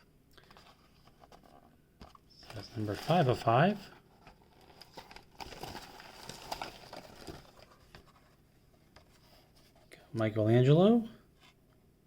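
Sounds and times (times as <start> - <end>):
plastic packaging rustling: 2.4 - 8.4.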